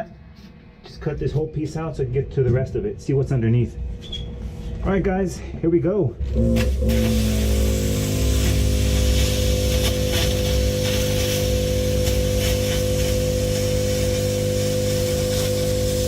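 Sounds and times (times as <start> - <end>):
machine humming: 6.1 - 16.0
plasma cutter hissing and crackling: 6.6 - 16.0.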